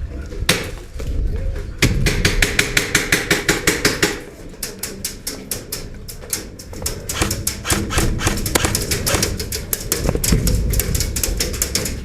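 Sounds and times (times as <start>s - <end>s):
airsoft gun firing rapidly: 7.1s - 9.4s.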